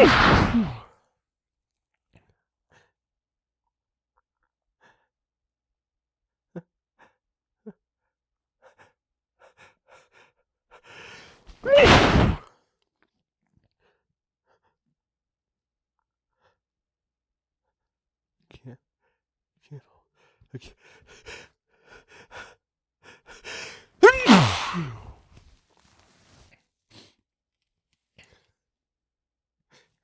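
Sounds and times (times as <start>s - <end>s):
man sneezing: 0.0s - 0.8s, 11.5s - 12.4s, 24.0s - 25.1s
drawn-in breath: 23.6s - 25.1s.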